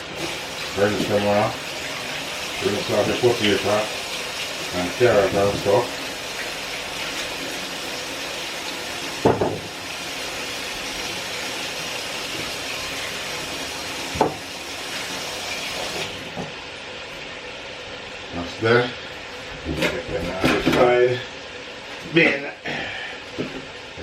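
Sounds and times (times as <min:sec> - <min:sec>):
kitchen tap running: 0:00.0 - 0:16.8.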